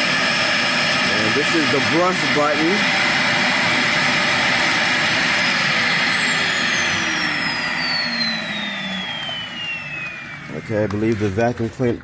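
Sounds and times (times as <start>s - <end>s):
vacuum cleaner motor whining: 0.0s - 12.0s.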